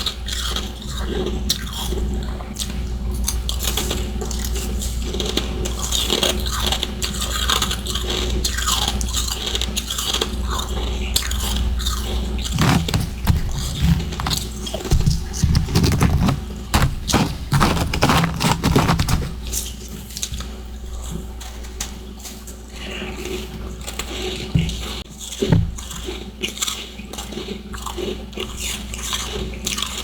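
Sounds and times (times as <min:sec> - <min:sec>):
chewing crunchy ice: 0:04.8 - 0:19.7, 0:25.2 - 0:30.0.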